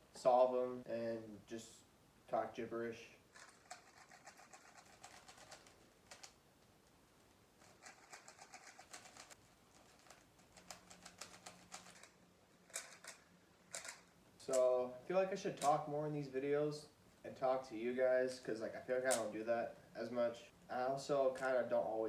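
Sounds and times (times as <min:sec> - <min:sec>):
plastic puzzle cube clicking: 0:07.7 - 0:14.1.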